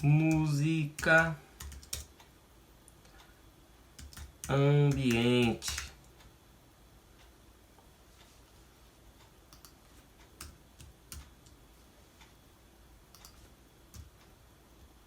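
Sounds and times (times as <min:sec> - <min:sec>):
low room hiss: 0:00.0 - 0:15.0
computer keyboard key clicks: 0:04.0 - 0:05.9.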